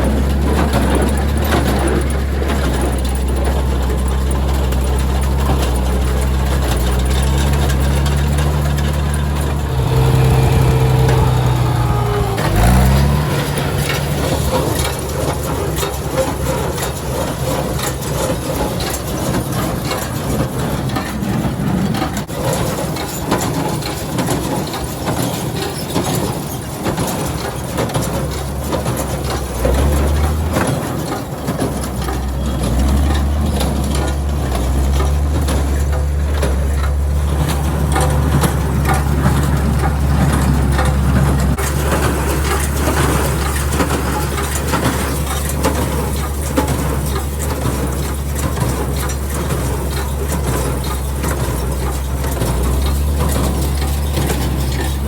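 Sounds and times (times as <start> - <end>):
baler rattling and crunching: 0.0 - 55.0
tractor engine running: 0.0 - 55.0.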